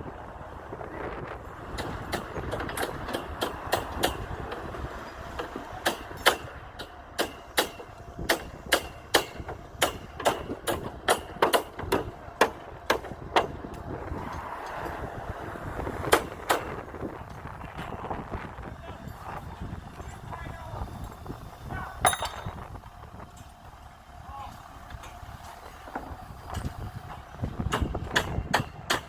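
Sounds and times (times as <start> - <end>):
wind rumble on microphone: 0.0 - 29.0
hammering on wood: 5.4 - 13.6, 27.7 - 29.0.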